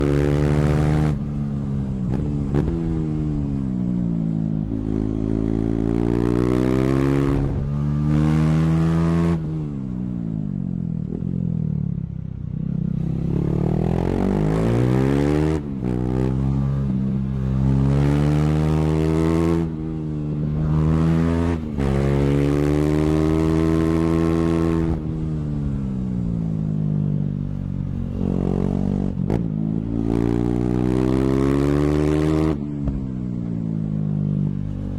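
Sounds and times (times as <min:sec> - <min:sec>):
motorcycle engine revving: 0:11.0 - 0:26.3.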